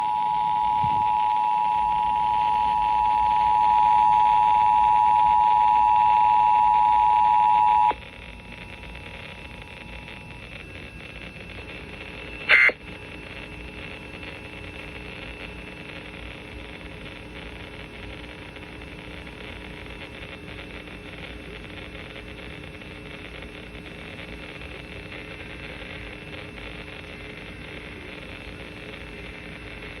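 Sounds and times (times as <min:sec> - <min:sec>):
radio hiss: 0:00.0 - 0:30.0.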